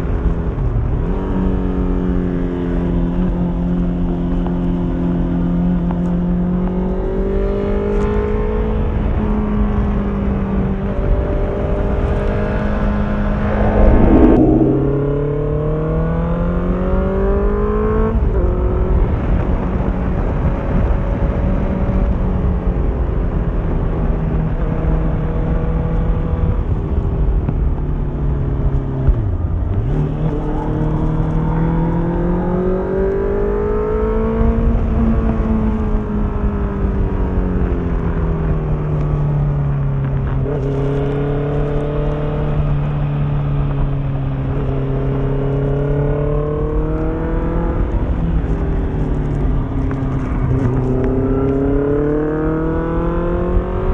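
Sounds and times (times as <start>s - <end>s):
motorcycle engine revving: 11.4s - 17.3s.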